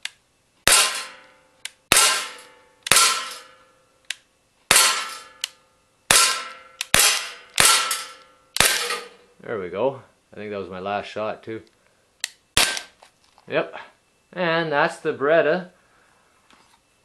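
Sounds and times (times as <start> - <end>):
air pistol shots: 0.6 - 1.3, 1.9 - 3.5, 4.7 - 5.5, 6.1 - 9.2, 12.6 - 13.0
pellets striking steel trap: 0.6 - 3.7, 4.7 - 5.5, 6.1 - 9.2, 12.6 - 13.0.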